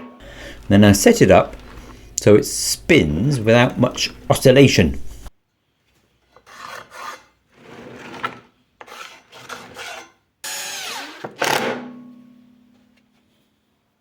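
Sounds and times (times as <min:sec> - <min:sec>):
steel pipe scraping on bearing: 0:06.4 - 0:10.2.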